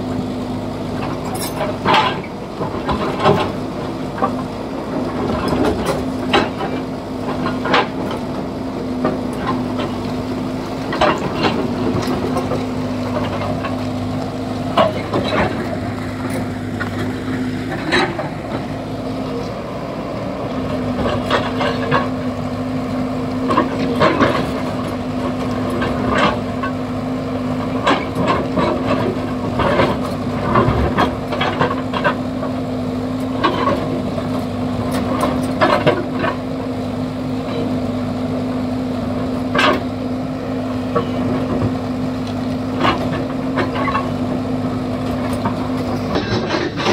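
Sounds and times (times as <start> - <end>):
diesel engine running: 0.0 - 46.9
knocks and scrapes of digging: 40.8 - 46.9.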